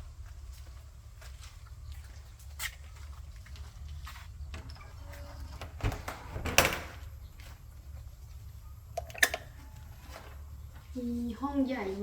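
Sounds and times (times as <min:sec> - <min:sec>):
door knocks and clunk: 0:05.5 - 0:07.0.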